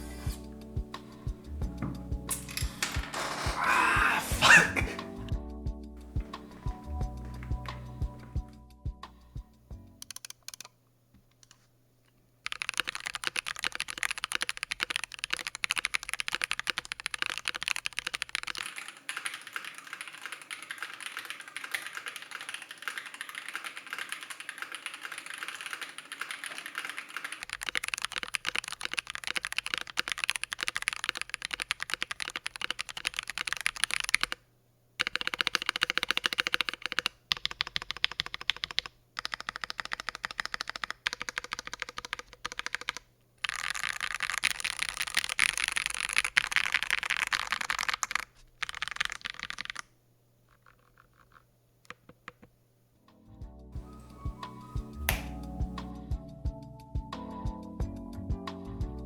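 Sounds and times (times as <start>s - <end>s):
fast typing on mechanical keyboard: 6.1s - 8.4s, 10.0s - 10.7s, 12.4s - 34.4s, 35.0s - 49.9s, 50.5s - 52.4s.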